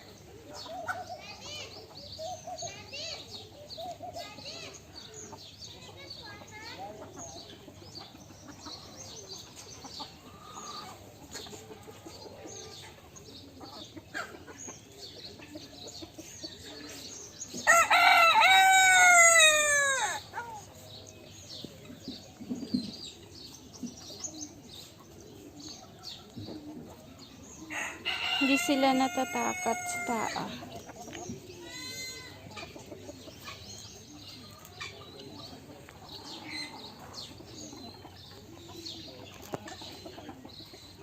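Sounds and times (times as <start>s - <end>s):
small birds chirping: 0.0s - 41.0s
hens clucking: 6.8s - 17.1s, 21.6s - 41.0s
rooster crowing: 17.7s - 20.2s.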